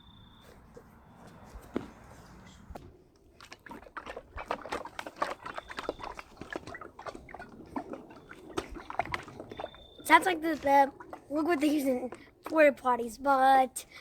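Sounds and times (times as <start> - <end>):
liquid sloshing in plastic bottle: 2.7 - 13.2.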